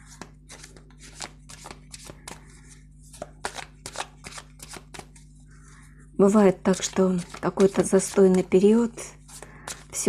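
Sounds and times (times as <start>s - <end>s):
cards being shuffled: 0.1s - 5.3s, 6.6s - 8.6s, 9.2s - 10.0s.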